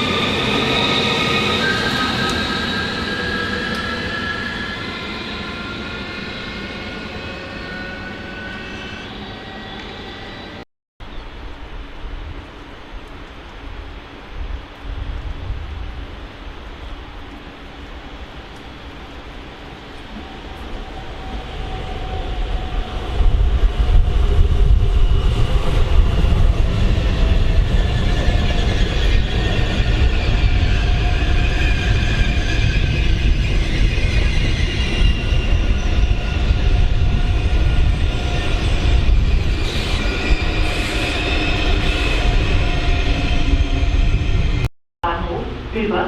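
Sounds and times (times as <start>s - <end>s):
high squealing of train wheels: 0.0s - 10.6s, 19.8s - 44.7s
train rumbling along track: 0.0s - 10.6s, 11.5s - 46.0s.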